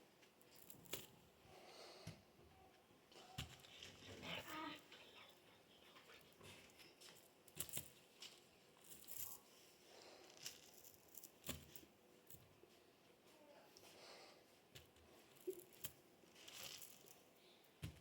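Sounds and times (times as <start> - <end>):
rustles: 3.1 - 14.2, 15.0 - 17.4.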